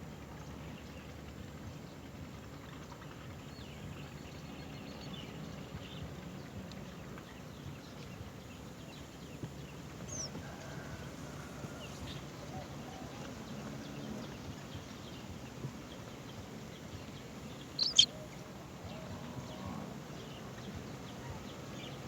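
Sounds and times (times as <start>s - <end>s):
low background rumble: 0.1s - 21.4s
high falling bird call: 17.8s - 18.1s
faint bird chirps: 17.8s - 18.2s.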